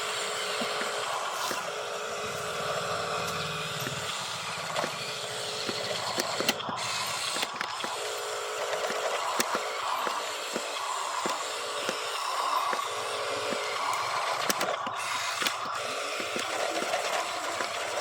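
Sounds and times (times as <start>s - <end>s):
small electric motors whirring: 0.0s - 18.0s
plastic clicks and knocks: 5.6s - 8.0s, 8.7s - 18.0s.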